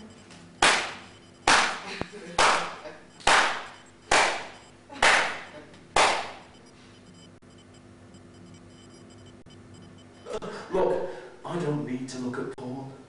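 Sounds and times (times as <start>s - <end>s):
loud sharp slaps: 0.6s - 6.5s.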